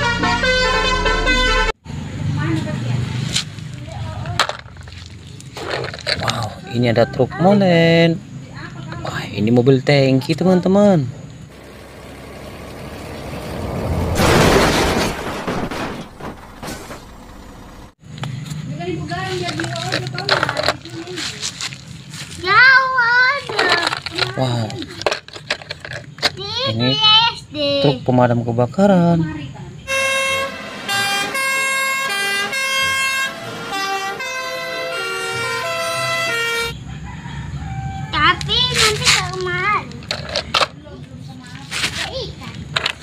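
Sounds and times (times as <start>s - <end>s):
plastic toy vehicles clattering: 3.4s - 6.7s, 19.1s - 22.4s, 23.3s - 26.7s, 38.4s - 43.0s.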